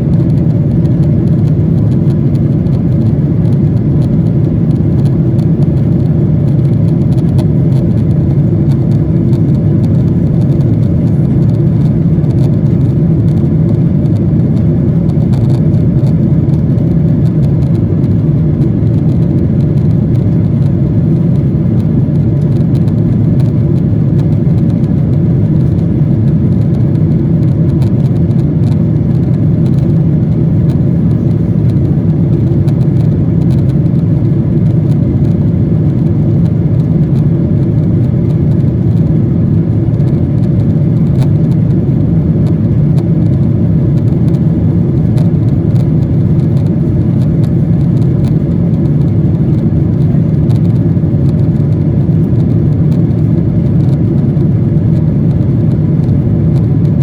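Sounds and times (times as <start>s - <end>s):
aircraft cabin engine drone: 0.0s - 57.0s.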